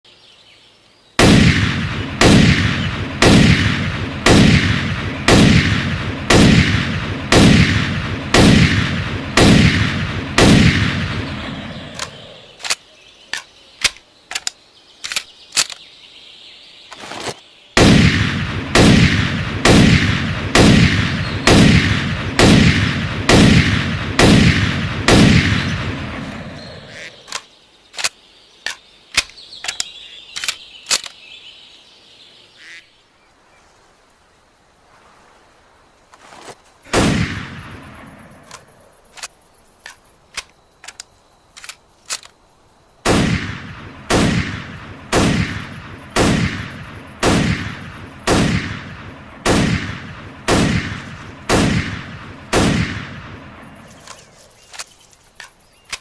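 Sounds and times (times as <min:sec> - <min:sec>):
rifle shots with ringing tail: 0:01.2 - 0:12.6, 0:17.8 - 0:27.1, 0:36.9 - 0:38.7, 0:43.1 - 0:54.4
sharp clicks: 0:11.9 - 0:15.9, 0:27.0 - 0:31.3, 0:38.4 - 0:42.4, 0:50.5 - 0:56.0.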